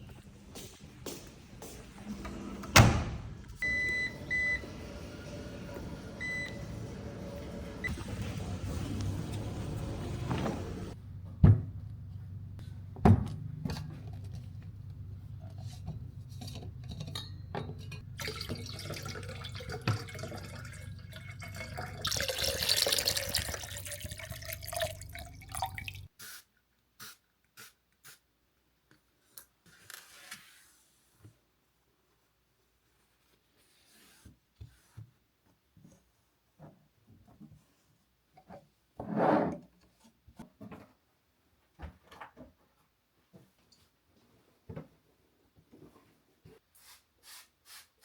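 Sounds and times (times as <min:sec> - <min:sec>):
water running into a vessel: 0:18.0 - 0:26.1.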